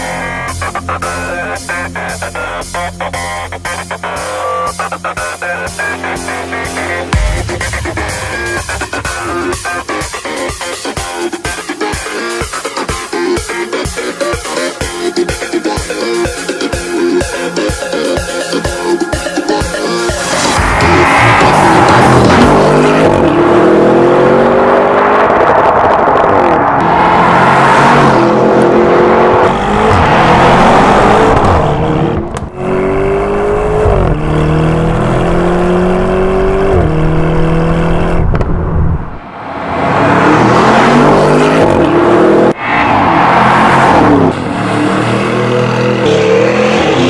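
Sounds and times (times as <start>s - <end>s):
car engine accelerating hard: 3.6s - 10.8s, 20.2s - 47.0s.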